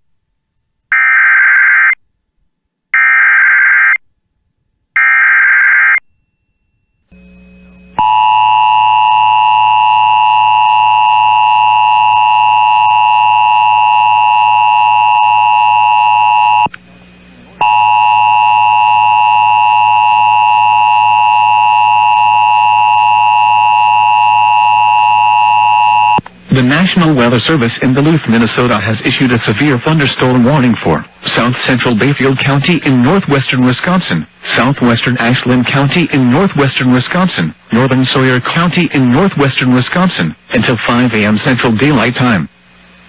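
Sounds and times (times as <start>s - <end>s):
steady attention tone: 6.0s - 16.8s.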